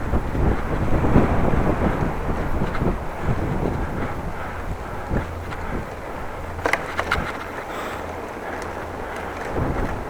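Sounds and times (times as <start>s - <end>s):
wind buffeting microphone: 0.0s - 10.0s.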